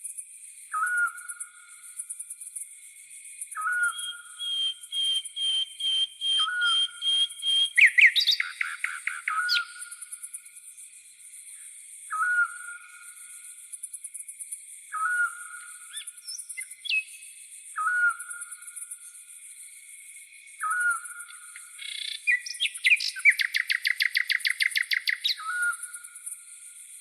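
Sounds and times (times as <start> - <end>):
crickets and cicadas chirring: 0.0 - 27.0
bird whistled notes: 0.7 - 1.2, 3.6 - 9.8, 12.1 - 12.8, 14.9 - 17.1, 17.8 - 18.3, 20.6 - 21.2, 21.8 - 25.9.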